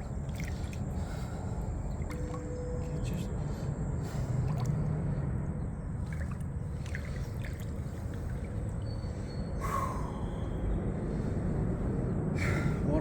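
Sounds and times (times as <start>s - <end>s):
river water trickling: 0.0s - 10.2s.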